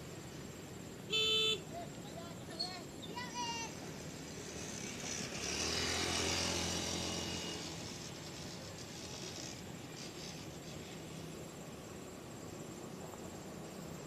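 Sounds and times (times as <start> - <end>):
bus driving past: 3.6 - 14.0.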